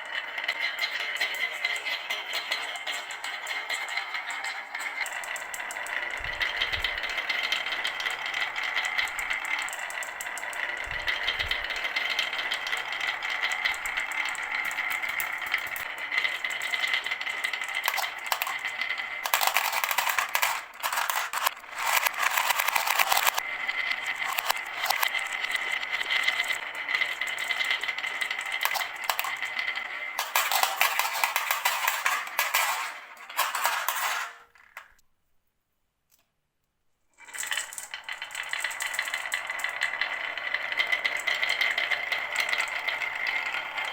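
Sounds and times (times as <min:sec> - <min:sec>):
marbles rattling down marble run: 0:00.0 - 0:35.0, 0:37.2 - 0:43.9.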